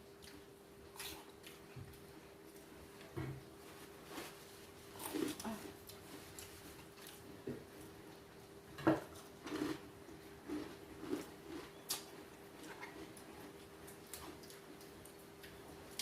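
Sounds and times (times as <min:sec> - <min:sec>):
faint steady hum: 0:00.0 - 0:16.0
chewing and mouth smacks: 0:10.5 - 0:16.0.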